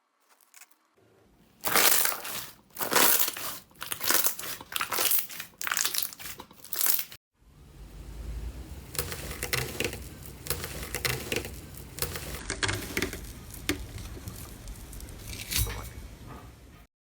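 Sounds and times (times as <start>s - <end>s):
low rumble: 7.4s - 9.0s.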